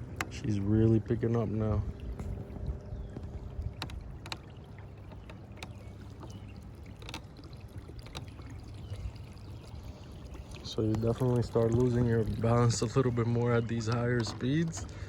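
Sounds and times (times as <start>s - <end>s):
low motor hum: 0.0s - 15.0s
water rushing along a hull: 0.0s - 15.0s.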